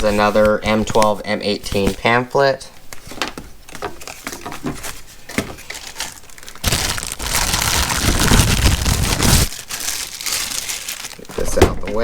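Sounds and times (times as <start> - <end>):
packaging rustling and clicking: 2.9 - 12.0
loud crinkling of packing material: 3.7 - 12.0.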